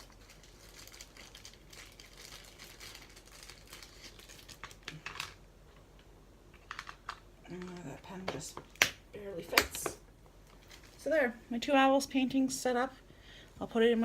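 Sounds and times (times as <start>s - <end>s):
plastic packaging crinkling: 0.0s - 5.4s, 10.4s - 11.2s.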